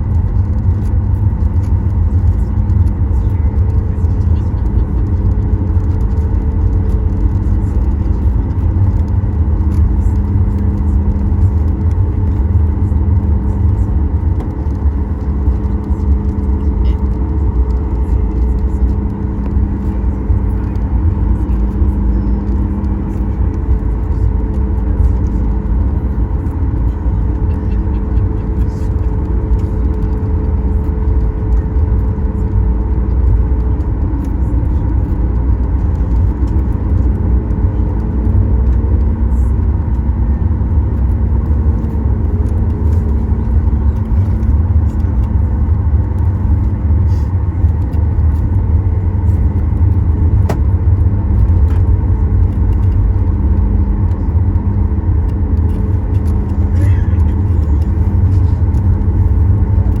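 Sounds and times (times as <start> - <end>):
airplane cabin low rumble: 0.0 - 60.0
steady hums: 0.0 - 60.0.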